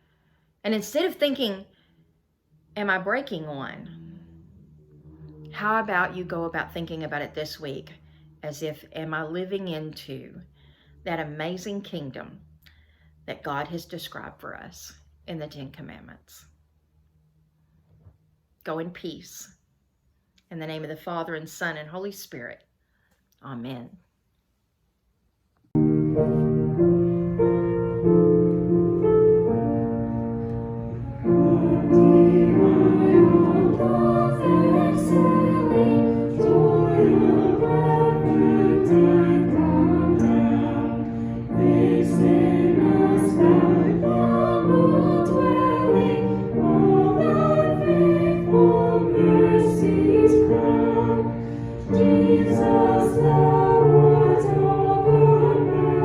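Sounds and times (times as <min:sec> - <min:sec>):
choir singing sustained chords: 0:25.8 - 0:56.0.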